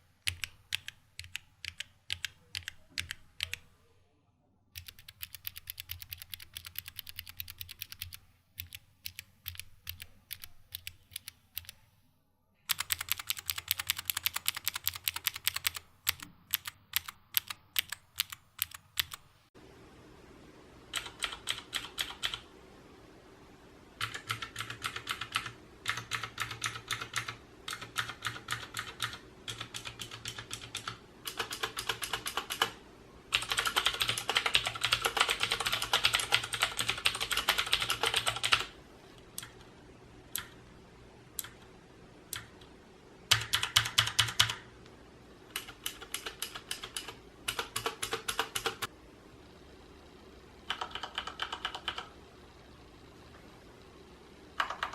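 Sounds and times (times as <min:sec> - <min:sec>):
mechanical keyboard typing: 0:00.2 - 0:03.7, 0:04.8 - 0:11.8, 0:12.7 - 0:19.3, 0:20.9 - 0:22.5, 0:24.0 - 0:38.8, 0:39.4 - 0:39.7, 0:40.3 - 0:40.6, 0:41.4 - 0:41.6, 0:42.3 - 0:42.7, 0:43.3 - 0:44.7, 0:45.5 - 0:48.9, 0:50.6 - 0:52.2, 0:54.6 - 0:54.9.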